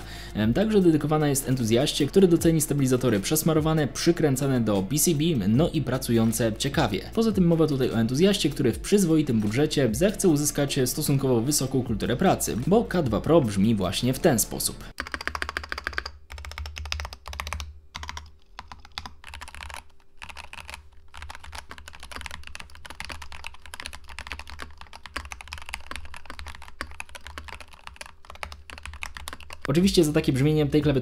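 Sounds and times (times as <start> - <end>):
fast mechanical keyboard typing: 14.9 - 30.2.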